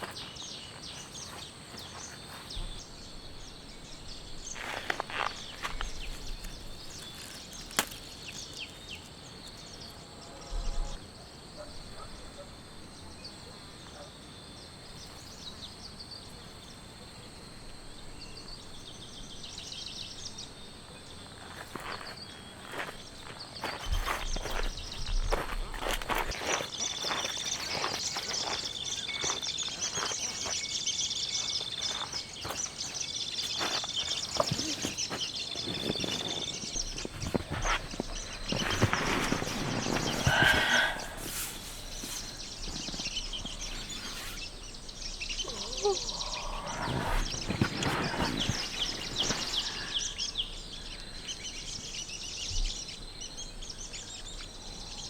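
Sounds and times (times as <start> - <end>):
high insect trill: 0.0 - 11.2, 14.5 - 55.0
bird chirps: 21.7 - 53.0
high chirping animal calls: 45.2 - 50.1.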